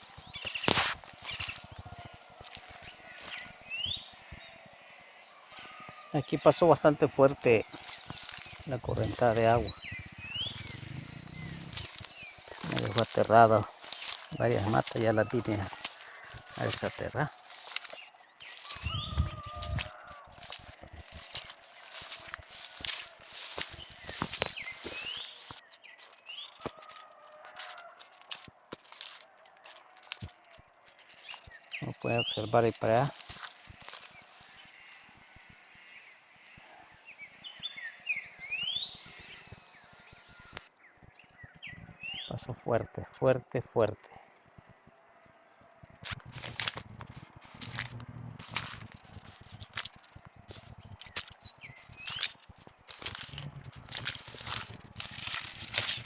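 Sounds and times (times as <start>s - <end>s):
footsteps rustling on field: 0.0s - 4.5s, 5.6s - 34.6s, 46.0s - 56.0s
bird chirping: 0.0s - 27.9s, 30.5s - 43.1s, 43.8s - 56.0s.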